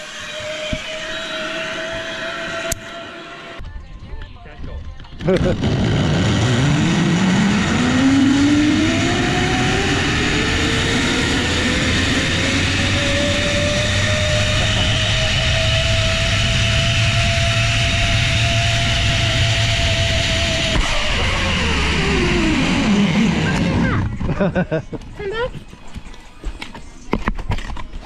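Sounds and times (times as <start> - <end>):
zipline pulleys whining on cable: 0.0 - 3.6, 5.4 - 24.2.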